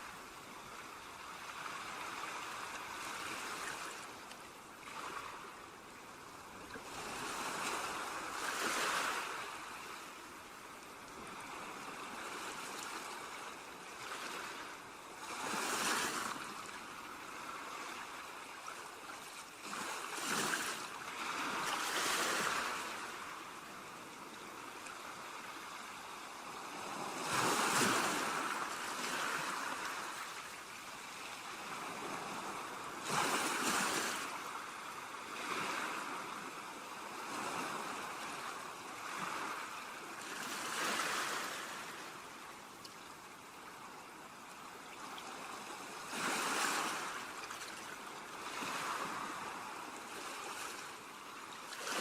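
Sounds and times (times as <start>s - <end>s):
ocean surf breaking on beach: 25.0s - 42.4s.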